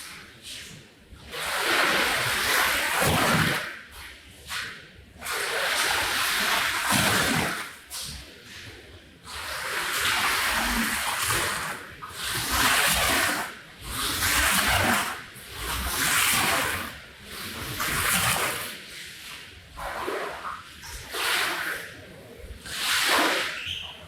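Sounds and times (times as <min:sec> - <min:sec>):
wet rug swishing: 0:17.5 - 0:24.0.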